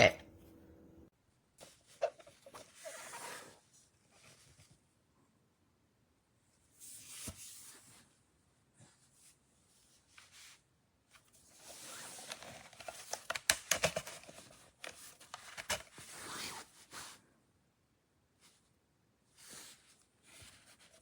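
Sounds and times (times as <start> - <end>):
handling rustling and scraping: 8.8 - 17.3, 18.4 - 21.0.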